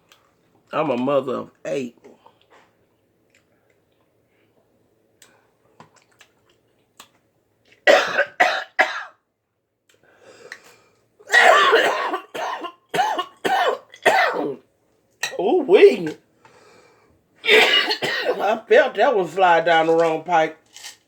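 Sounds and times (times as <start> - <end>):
woman coughing: 7.9 - 9.2, 11.3 - 14.6, 17.4 - 18.5.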